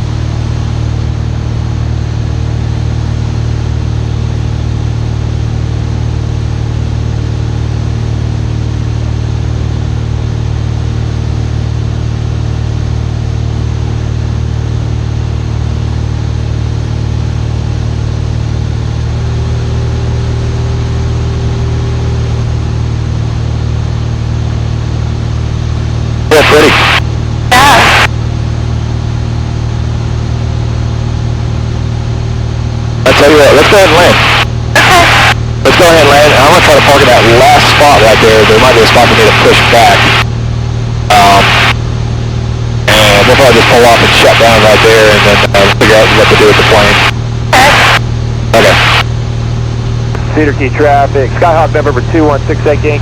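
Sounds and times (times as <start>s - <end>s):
propeller plane engine droning: 0.0s - 53.0s.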